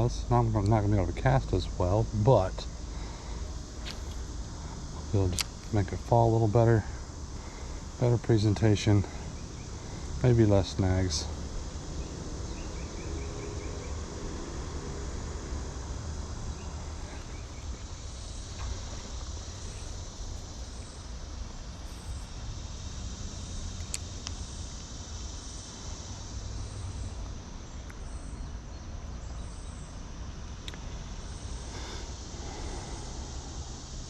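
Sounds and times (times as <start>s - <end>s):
insects trilling: 0.0s - 34.0s
faint ticks: 17.0s - 21.1s, 23.6s - 25.0s, 30.6s - 32.3s.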